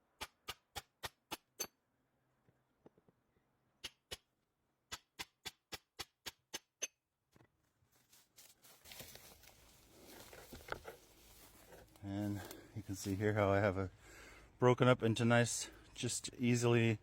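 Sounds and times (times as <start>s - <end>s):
rustling handling noise: 7.6s - 13.5s.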